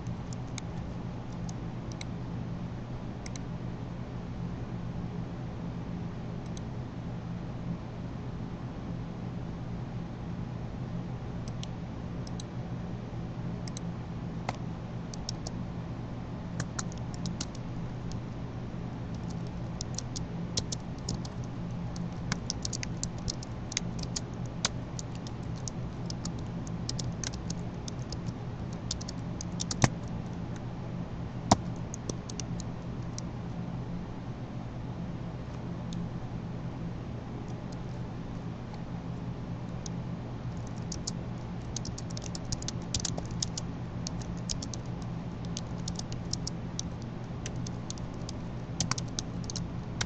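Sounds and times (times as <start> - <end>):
low hum and hiss: 0.0 - 50.0.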